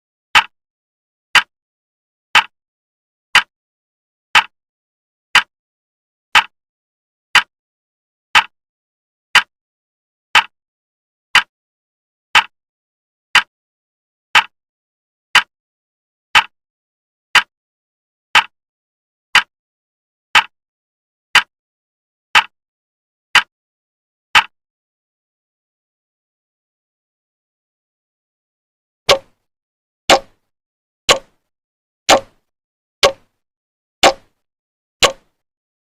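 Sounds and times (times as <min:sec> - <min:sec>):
clock ticking: 0:03.3 - 0:03.5, 0:04.3 - 0:04.5, 0:05.3 - 0:05.5, 0:06.3 - 0:06.6, 0:07.3 - 0:07.5, 0:09.3 - 0:09.5, 0:11.3 - 0:11.5, 0:13.3 - 0:13.5, 0:14.4 - 0:14.6, 0:15.3 - 0:15.5, 0:18.4 - 0:18.6, 0:21.3 - 0:21.5, 0:22.4 - 0:22.6, 0:29.1 - 0:29.5, 0:30.1 - 0:30.5, 0:31.1 - 0:31.5, 0:32.1 - 0:33.4, 0:34.0 - 0:34.4, 0:35.0 - 0:35.4.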